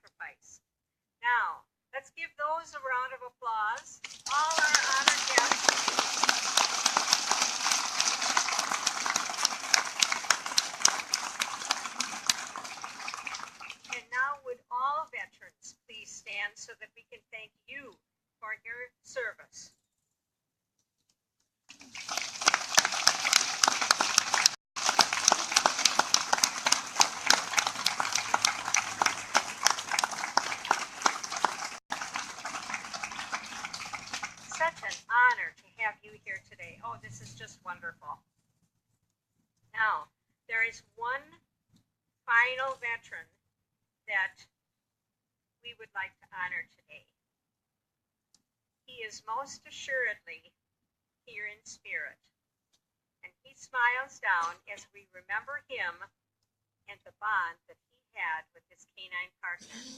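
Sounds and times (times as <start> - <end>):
audience applauding: 4.1 - 14.0, 21.7 - 35.0.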